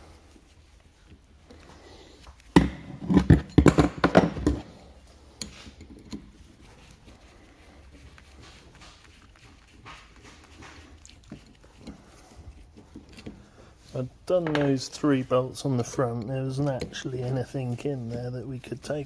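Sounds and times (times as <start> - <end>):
metal tools knocking and clattering: 2.6 - 4.7.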